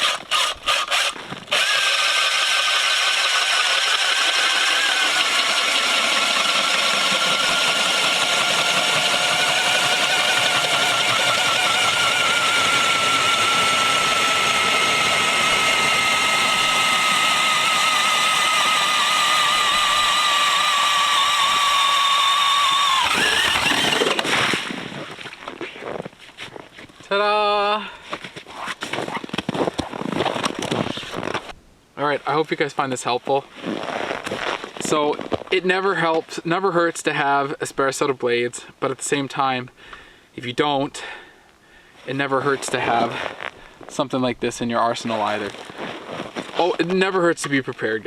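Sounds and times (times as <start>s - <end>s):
ice auger motor whining: 0.0s - 26.0s.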